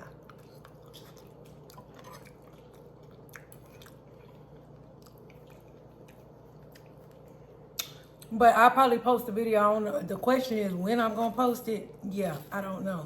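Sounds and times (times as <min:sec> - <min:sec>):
person chewing food: 0:00.0 - 0:08.3
wet mouth clicks: 0:05.0 - 0:08.3.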